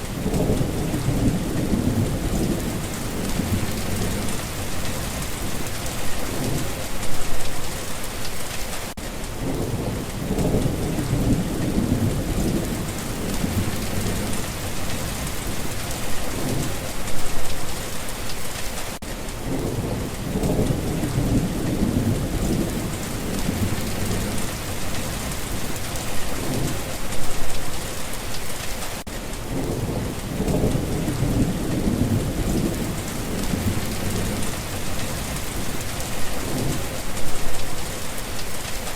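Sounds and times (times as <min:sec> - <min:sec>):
thunder rumbling: 0:00.0 - 0:07.8, 0:09.4 - 0:17.9, 0:19.4 - 0:27.7, 0:29.4 - 0:38.8
heavy rain hissing: 0:00.0 - 0:38.9.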